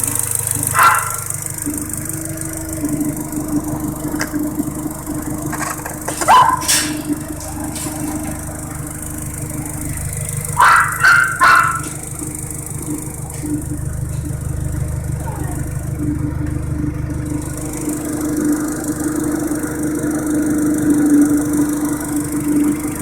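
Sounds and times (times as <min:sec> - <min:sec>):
car engine idling: 0:00.0 - 0:23.0
dog barking: 0:00.6 - 0:01.5, 0:06.2 - 0:08.2, 0:10.5 - 0:12.2.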